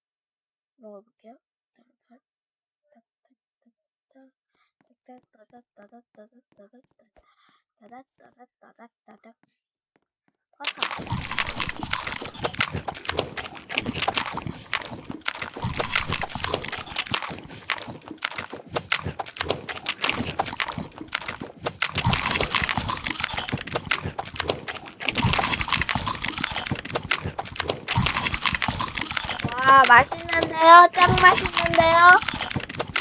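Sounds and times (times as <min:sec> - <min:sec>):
person chewing crunchy food: 0:10.6 - 0:33.0.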